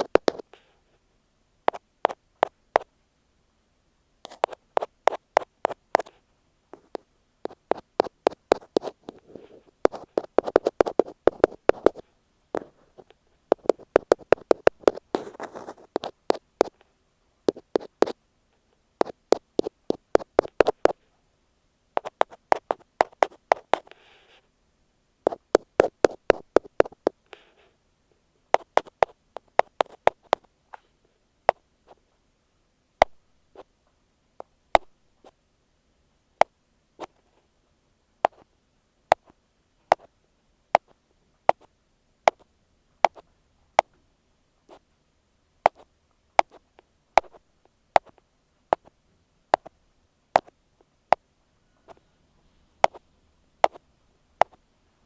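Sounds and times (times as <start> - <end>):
ear pick tapping on microphone: 12.6 - 16.8, 52.8 - 53.0.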